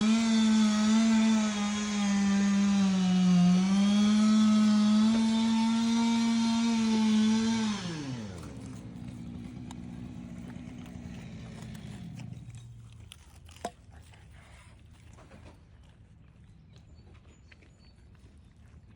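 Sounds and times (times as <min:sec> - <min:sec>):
chainsaw engine revving: 0:00.0 - 0:13.0.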